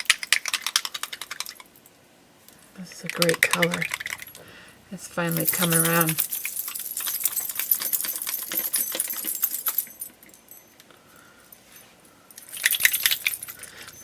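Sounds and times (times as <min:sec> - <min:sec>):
paint bottle mixing ball rattling: 0:02.9 - 0:04.5, 0:05.2 - 0:10.2.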